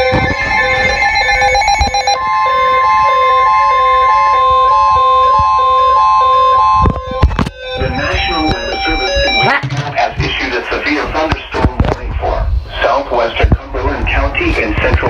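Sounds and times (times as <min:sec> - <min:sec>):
steady alarm tone: 0:00.0 - 0:11.3.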